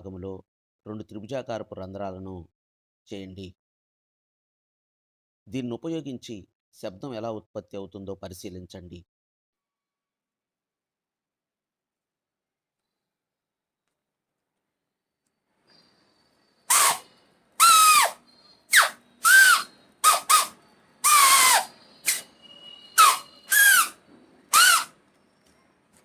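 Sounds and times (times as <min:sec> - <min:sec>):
paper whistle squawks: 0:16.7 - 0:25.0.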